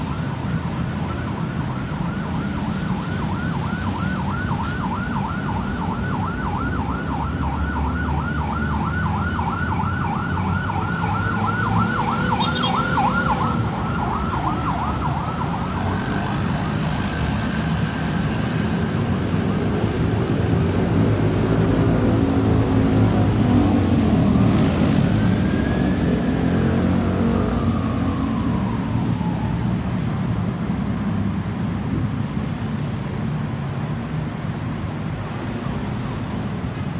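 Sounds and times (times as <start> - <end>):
ambulance siren yelping: 0.0 - 16.9, 23.9 - 30.7
road traffic noise: 0.0 - 36.9.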